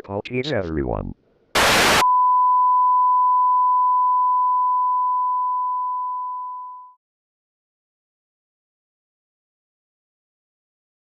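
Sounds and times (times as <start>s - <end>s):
loud static: 1.6s - 2.0s
single-pitch test tone: 2.0s - 7.0s.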